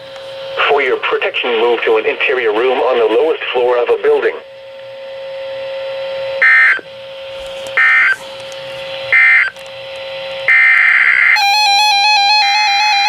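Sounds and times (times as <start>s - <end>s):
steady hum: 0.0s - 13.0s
alternating alarm tones: 3.6s - 8.2s, 9.0s - 13.0s
buzzing data tone bursts: 6.1s - 7.0s, 7.8s - 8.2s, 9.1s - 9.6s, 10.4s - 13.0s.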